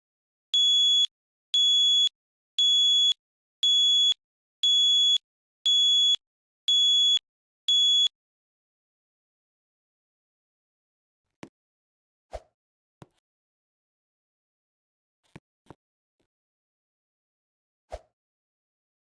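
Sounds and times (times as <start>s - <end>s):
fire alarm beeping: 0.6s - 8.1s.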